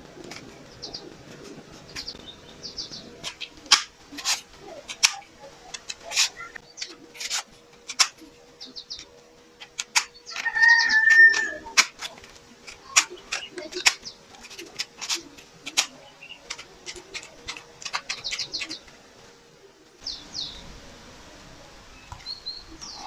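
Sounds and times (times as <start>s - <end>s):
sharp clicks and snaps: 3.2s - 10.5s, 11.4s - 19.0s
rooster crowing: 10.3s - 11.8s.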